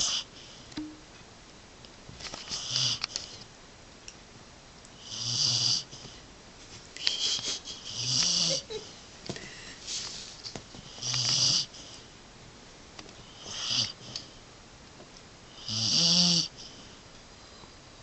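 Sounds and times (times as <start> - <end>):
dog snoring: 2.5 - 3.2, 5.0 - 6.1, 7.8 - 8.7, 10.8 - 12.0, 13.2 - 14.2, 15.5 - 16.8
wheezy breaths: 9.3 - 12.2.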